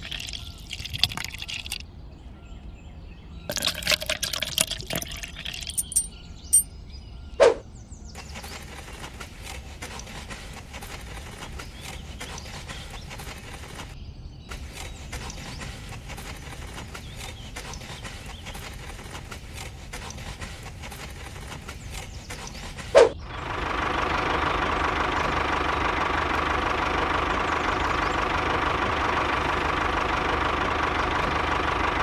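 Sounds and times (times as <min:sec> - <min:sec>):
small motor humming: 0:08.2 - 0:32.0.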